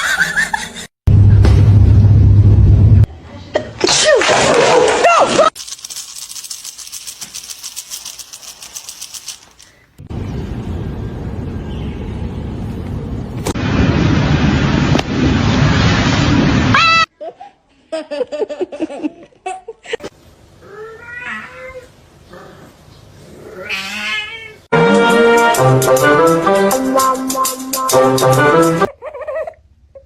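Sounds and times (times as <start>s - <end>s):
cat meowing and yowling: 20.6s - 21.9s, 23.6s - 24.6s.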